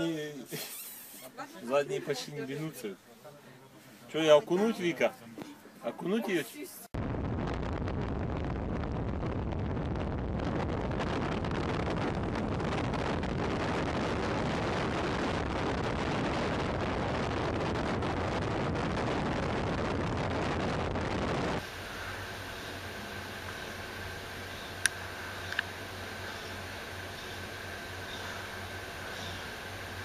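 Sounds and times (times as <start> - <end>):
loud rushing noise with deep rumble: 7.0 - 30.0.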